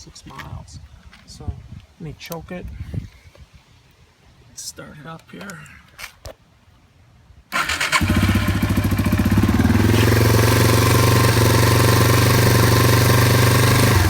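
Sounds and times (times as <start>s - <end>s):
motorcycle engine starting and running: 7.5s - 14.0s.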